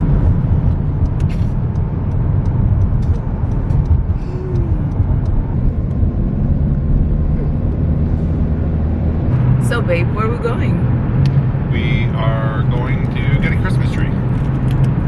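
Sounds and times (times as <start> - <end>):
car cabin road rumble: 0.0 - 15.0
faint clicks and rattles: 0.6 - 6.2.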